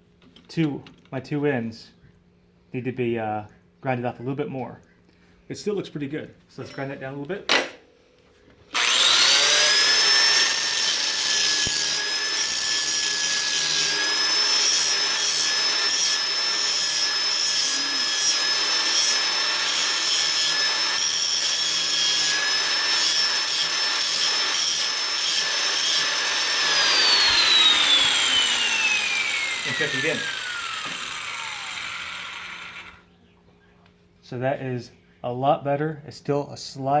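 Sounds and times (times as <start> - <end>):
angle grinder whining: 8.7 - 33.0.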